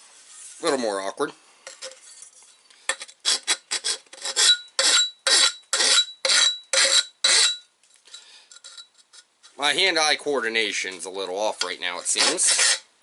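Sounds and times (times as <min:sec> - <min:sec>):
file rasping on aluminium tube: 0:03.2 - 0:07.6, 0:12.1 - 0:12.9.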